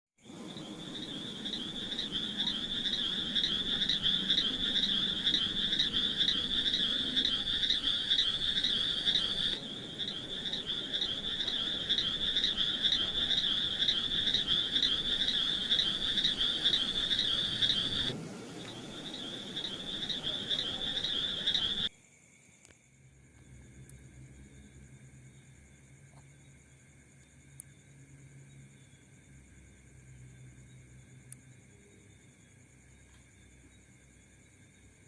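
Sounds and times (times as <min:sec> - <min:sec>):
frogs calling in chorus: 0:00.3 - 0:21.9.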